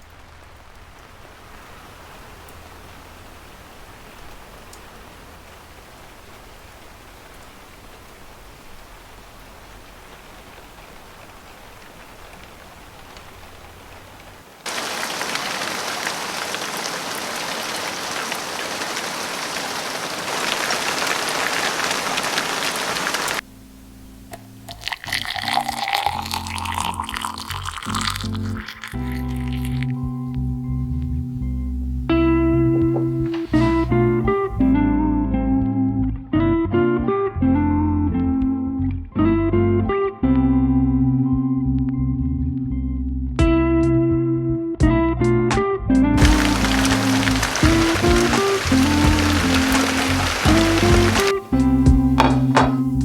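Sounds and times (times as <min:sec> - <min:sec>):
steady rain falling: 0:00.0 - 0:34.7, 0:46.2 - 0:53.0
soft music: 0:23.4 - 0:53.0.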